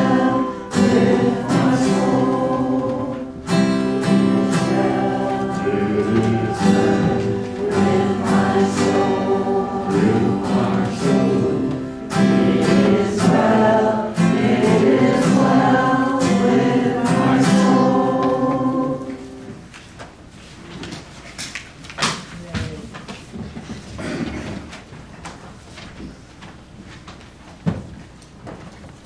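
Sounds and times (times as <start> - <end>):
instrumental accompaniment: 0.0 - 19.5
congregation singing a hymn: 0.0 - 19.7.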